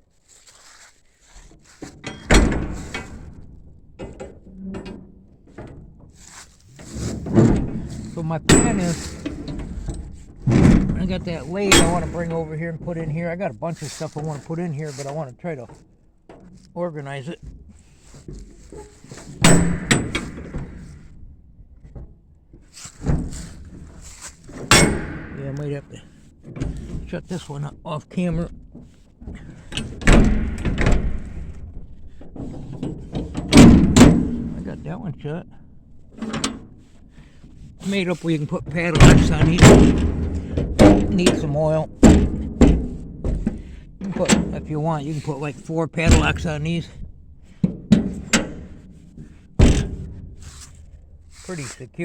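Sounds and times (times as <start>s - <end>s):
metal clanks and scraping: 0.4s - 52.0s
metal container door banging: 1.8s - 51.7s
metal clank: 1.9s - 13.0s, 17.4s - 21.3s, 22.9s - 27.4s.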